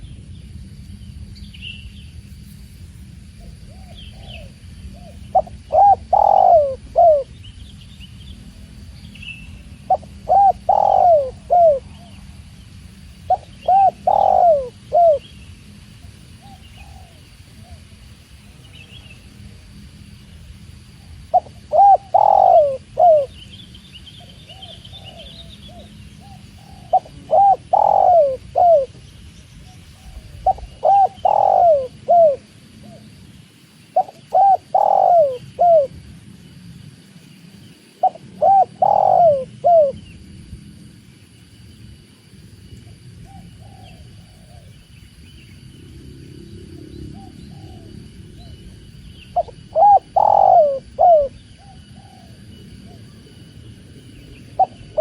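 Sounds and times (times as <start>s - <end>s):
dove cooing: 3.4s - 7.4s, 9.8s - 12.3s, 13.3s - 15.3s, 16.3s - 18.0s, 21.0s - 23.4s, 24.2s - 29.0s, 29.8s - 33.2s, 33.9s - 36.0s, 38.0s - 40.0s, 43.2s - 44.8s, 46.7s - 48.6s, 49.3s - 53.5s, 54.4s - 55.0s
small birds chirping: 3.4s - 35.9s.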